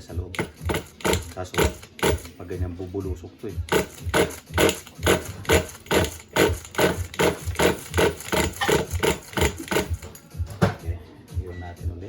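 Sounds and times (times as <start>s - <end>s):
engine cranking without starting: 0.3s - 2.4s, 3.6s - 10.2s.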